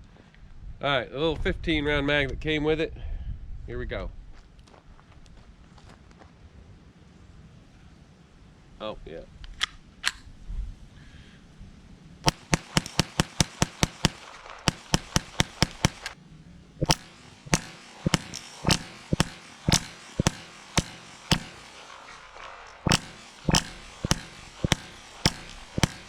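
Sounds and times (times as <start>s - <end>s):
pistol shots: 12.3s - 26.0s.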